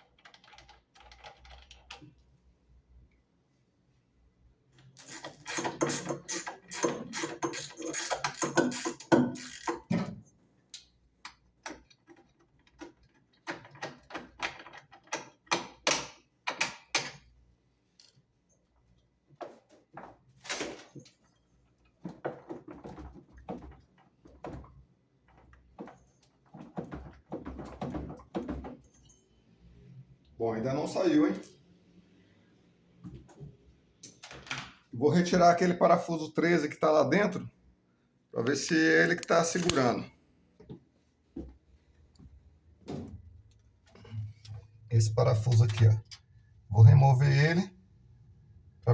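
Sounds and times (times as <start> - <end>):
hand tools clicking on metal: 5.0 - 9.9.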